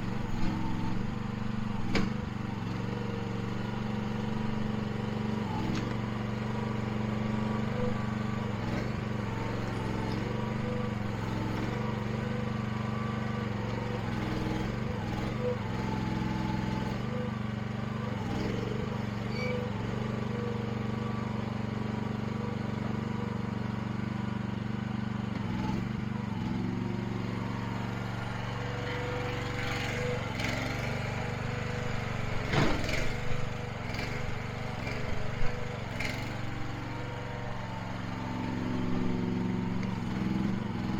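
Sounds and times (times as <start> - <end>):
small gasoline engine running: 0.0 - 40.9
knocks and clanks: 32.4 - 33.3.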